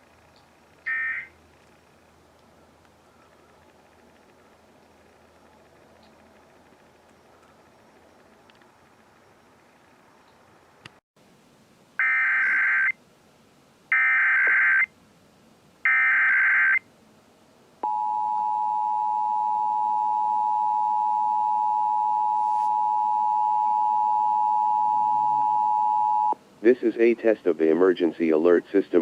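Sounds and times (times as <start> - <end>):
two-tone attention signal: 17.8 - 26.4.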